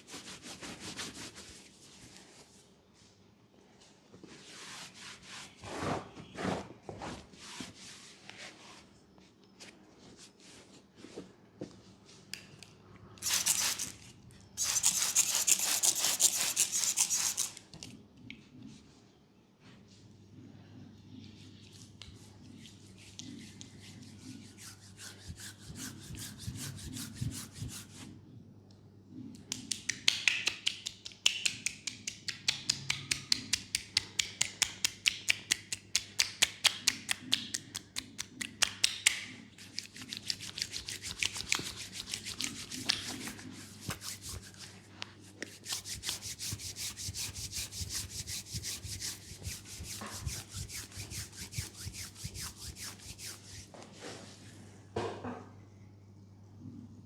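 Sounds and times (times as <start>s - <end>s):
hands rubbing skin: 33.6s - 53.8s.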